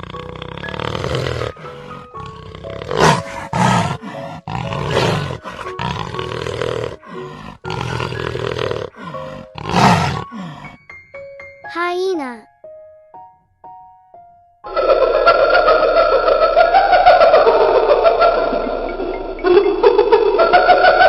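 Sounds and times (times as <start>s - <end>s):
cheetah growling: 0.0s - 10.7s
light children's tune: 10.3s - 14.6s.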